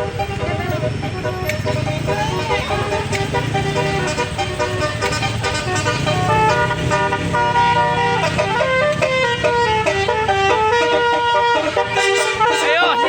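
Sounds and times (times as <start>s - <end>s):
bus engine rumble: 0.0s - 13.0s
musical bus air horn: 0.0s - 13.0s.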